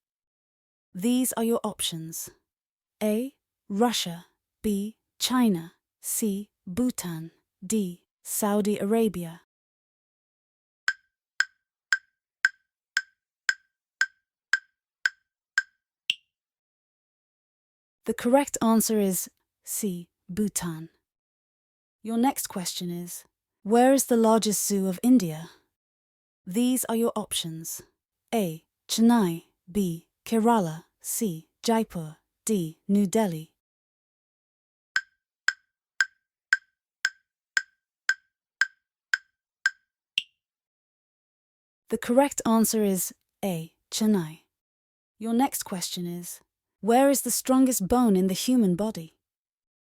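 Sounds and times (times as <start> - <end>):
clock-like timer ticks: 10.9 - 16.2, 35.0 - 40.3.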